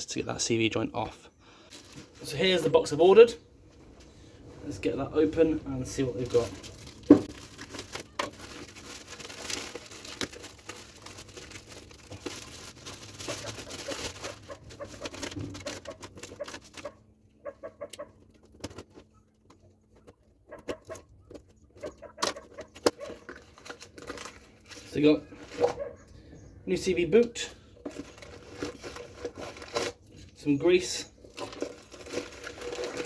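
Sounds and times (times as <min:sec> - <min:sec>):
cardboard box rustling and tearing: 0:05.8 - 0:17.0, 0:22.6 - 0:25.8, 0:27.9 - 0:30.2, 0:31.2 - 0:33.0.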